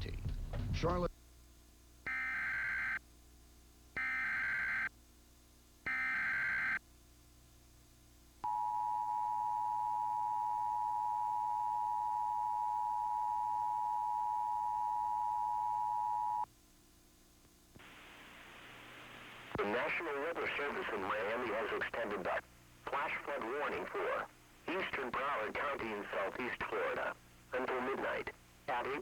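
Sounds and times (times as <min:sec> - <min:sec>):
faint hiss: 0:17.7 - 0:29.0.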